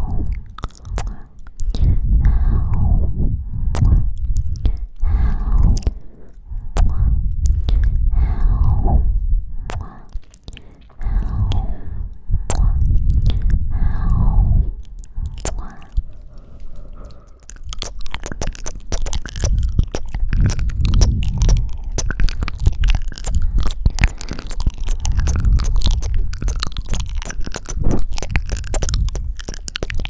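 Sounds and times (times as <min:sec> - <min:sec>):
breath on microphone: 0:00.0 - 0:30.0
wet kissing and sucking smacks: 0:00.3 - 0:01.9, 0:03.8 - 0:04.9, 0:06.8 - 0:07.9, 0:09.7 - 0:10.9, 0:12.5 - 0:13.5, 0:15.0 - 0:16.2, 0:17.2 - 0:30.0.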